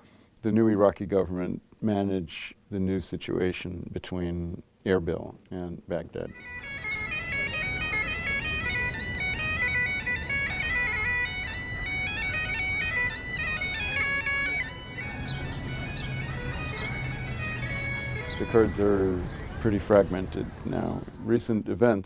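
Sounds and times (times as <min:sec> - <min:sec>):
reedy wind instrument melody: 0:06.2 - 0:21.3
steady drone: 0:06.6 - 0:19.6.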